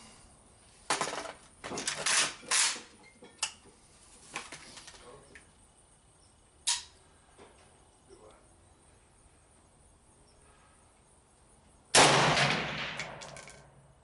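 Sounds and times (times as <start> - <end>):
metallic clinking and rattling: 13.0 - 13.7.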